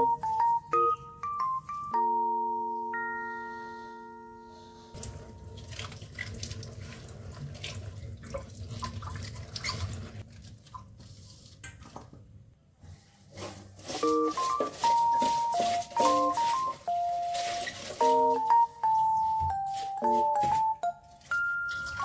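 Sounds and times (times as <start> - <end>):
background music with chimes: 0.0 - 5.0, 14.1 - 22.0
kitchen tap running into sink: 5.0 - 12.1, 21.2 - 22.0.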